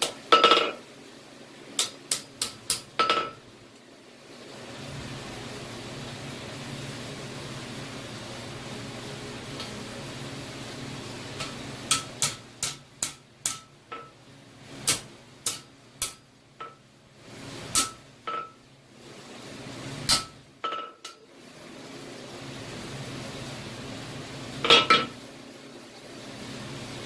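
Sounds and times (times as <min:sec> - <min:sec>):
hammer striking steel on anvil: 0:11.4 - 0:14.2, 0:14.9 - 0:16.8, 0:17.7 - 0:18.6.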